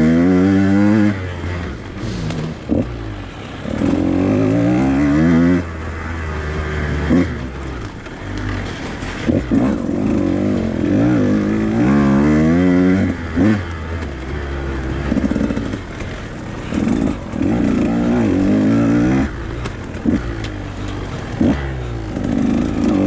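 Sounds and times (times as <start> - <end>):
motorcycle engine revving: 0.0 - 23.0.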